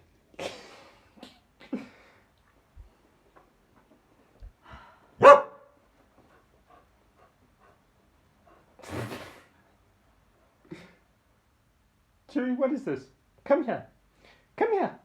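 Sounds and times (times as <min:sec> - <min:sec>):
dog barking: 0:05.2 - 0:05.8.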